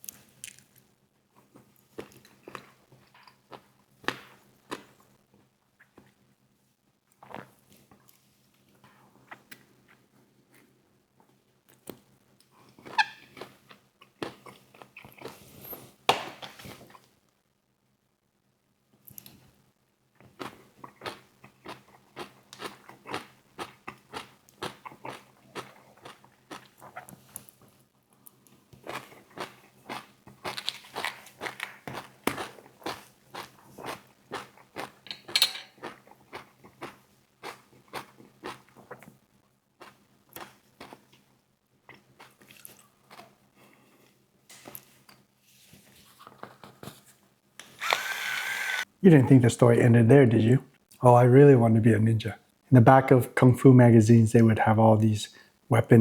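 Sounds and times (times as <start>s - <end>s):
eating and chewing: 1.4s - 6.2s, 7.1s - 15.9s, 20.2s - 39.2s, 39.8s - 45.0s.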